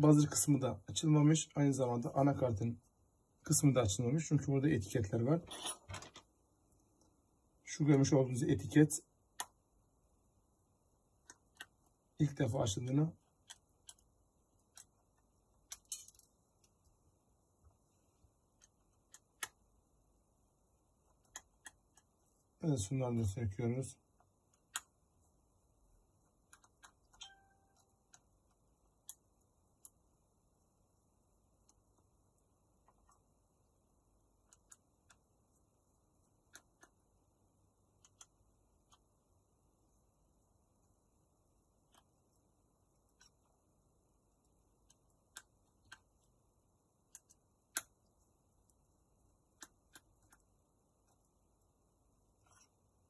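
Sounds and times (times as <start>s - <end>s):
small tools and parts clicking: 15.6s - 16.8s.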